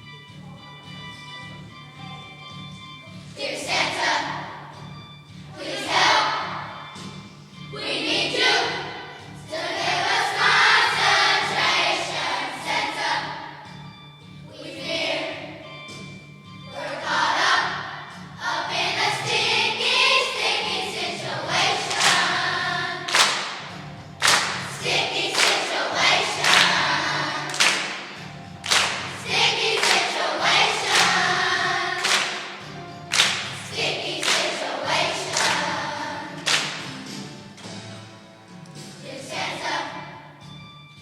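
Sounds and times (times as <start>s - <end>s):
musical accompaniment: 0.0s - 41.0s
children's choir singing: 0.9s - 13.9s, 14.5s - 37.1s, 38.8s - 40.5s
sharp percussive beats: 21.5s - 38.1s.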